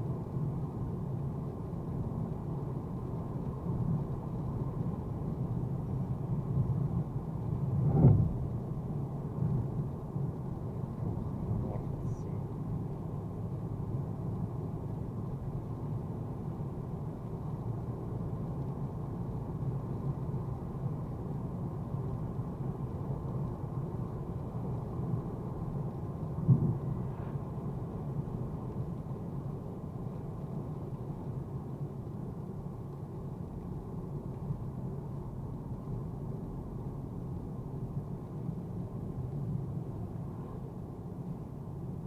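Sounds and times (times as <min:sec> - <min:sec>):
car engine low rumble: 0:00.0 - 0:42.0
short thump: 0:26.5 - 0:27.4.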